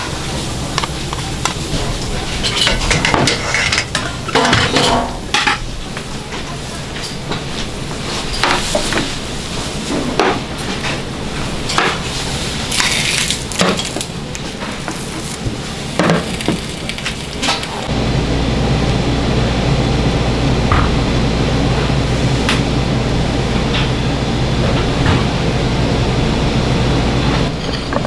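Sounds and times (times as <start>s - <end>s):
noisy background: 0.0s - 28.0s
dishes and utensils clinking: 27.5s - 28.0s.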